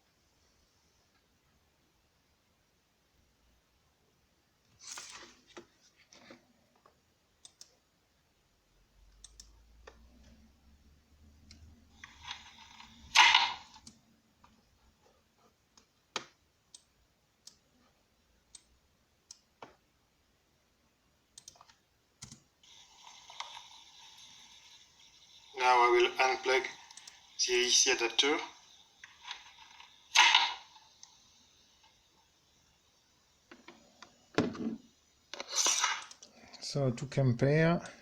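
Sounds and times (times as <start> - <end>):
keyboard and mouse clicks: 7.4 - 7.8, 9.1 - 10.4, 21.4 - 22.4.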